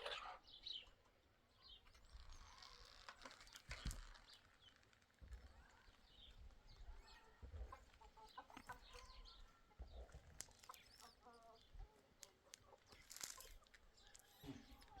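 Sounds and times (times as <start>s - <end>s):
chickens clucking: 0.0s - 1.9s, 5.3s - 15.0s.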